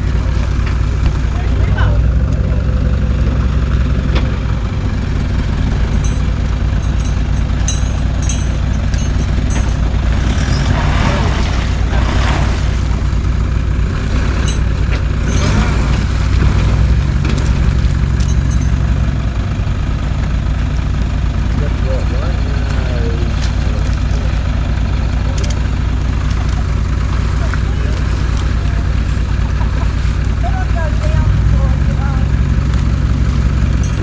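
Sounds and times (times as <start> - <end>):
vehicle engine droning: 0.0 - 34.0
rushing surges: 9.5 - 18.8.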